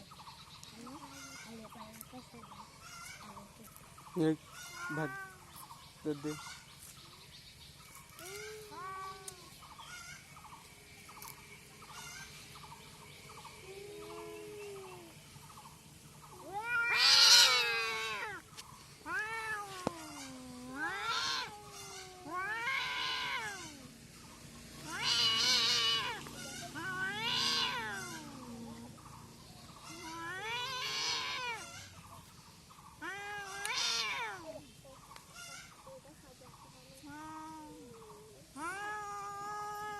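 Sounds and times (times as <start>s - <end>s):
cats yowling: 4.6s - 5.5s, 8.2s - 10.2s, 13.6s - 15.2s, 16.4s - 18.4s, 19.0s - 24.0s, 24.8s - 29.0s, 29.8s - 31.9s, 33.0s - 34.5s, 37.1s - 39.9s.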